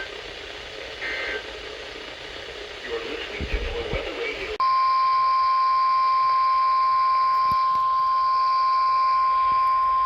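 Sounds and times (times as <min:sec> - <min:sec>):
steady high warning alarm tone: 0:00.0 - 0:01.7, 0:04.6 - 0:10.0.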